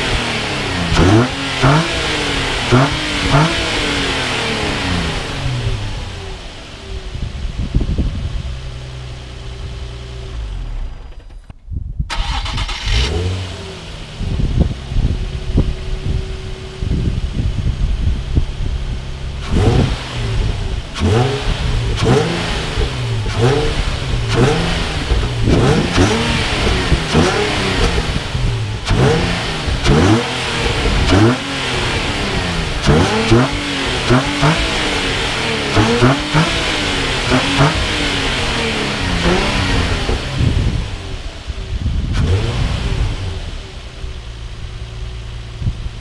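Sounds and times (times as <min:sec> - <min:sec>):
engine revving: 0:00.0 - 0:11.5, 0:12.1 - 0:45.7
car engine idling: 0:00.0 - 0:46.0.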